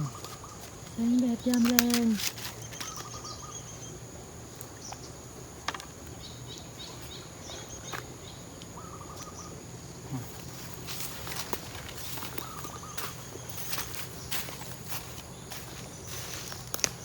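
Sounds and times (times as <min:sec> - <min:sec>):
bird chirps and calls: 0:00.0 - 0:04.0, 0:06.2 - 0:16.5
high-pitched insect drone: 0:06.8 - 0:16.6.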